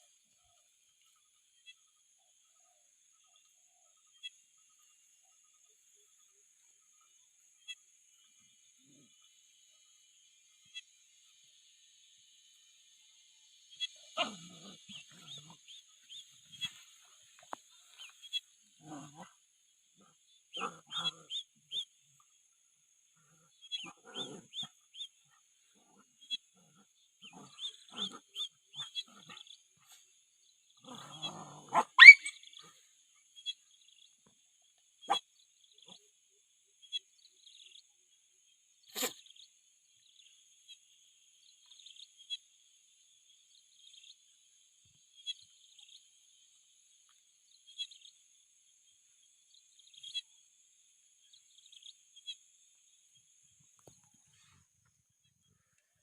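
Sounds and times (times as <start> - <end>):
puppy yelping: 31.7 - 32.4.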